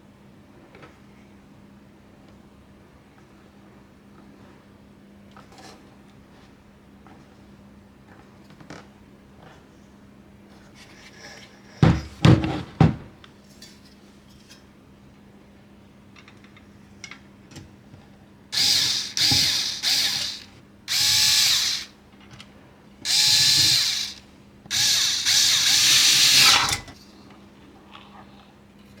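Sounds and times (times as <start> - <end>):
electric screwdriver motor whine: 18.6 - 21.9, 23.1 - 26.8.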